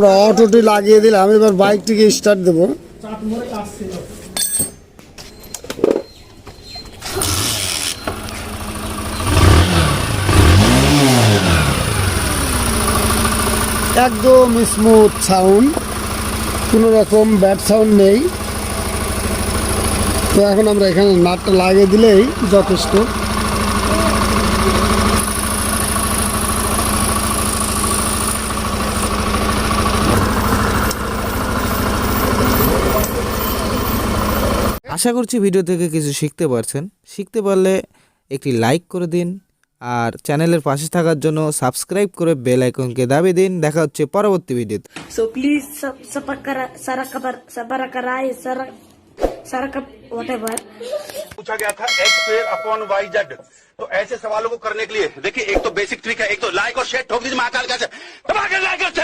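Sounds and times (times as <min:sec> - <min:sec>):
motorcycle engine starting and revving: 0:07.0 - 0:34.8.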